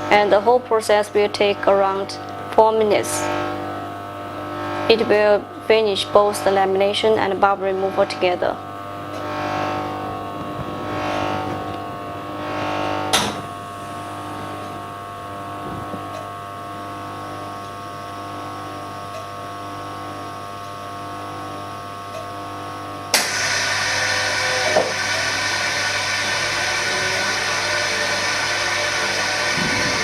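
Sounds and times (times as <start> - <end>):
vacuum laminator humming: 0.0 - 30.0
hissing rush of air: 23.2 - 30.0.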